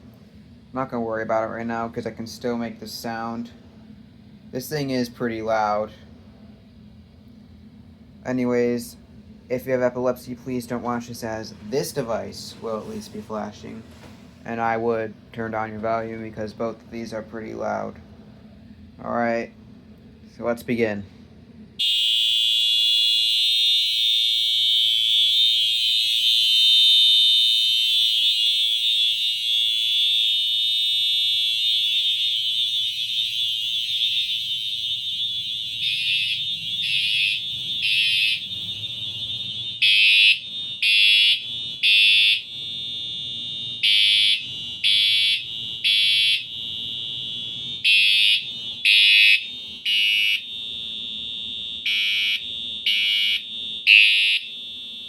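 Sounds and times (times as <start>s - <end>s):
fire alarm horn blasts: 21.8s - 55.0s
fire alarm horn steady tone: 21.8s - 55.0s.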